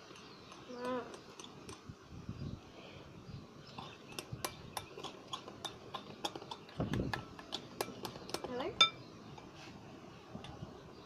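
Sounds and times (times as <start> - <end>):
utensil scraping a bowl: 3.7 - 8.9.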